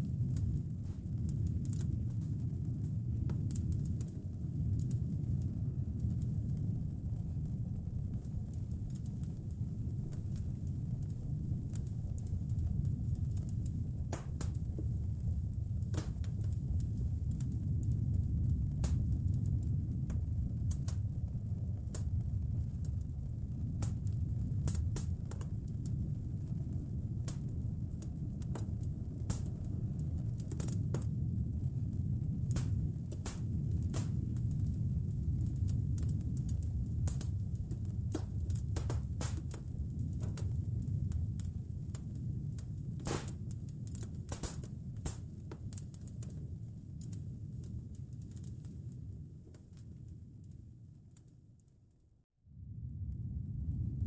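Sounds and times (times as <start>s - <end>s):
wood fire crackling: 0.0s - 51.8s
low fire rumble: 0.0s - 54.0s
low rumble: 52.5s - 54.0s.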